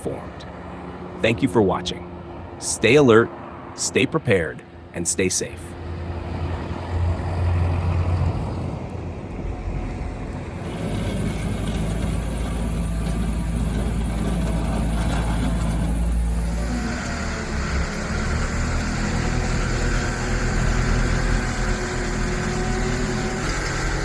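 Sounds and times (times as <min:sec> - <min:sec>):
vehicle engine running: 0:09.3 - 0:24.0.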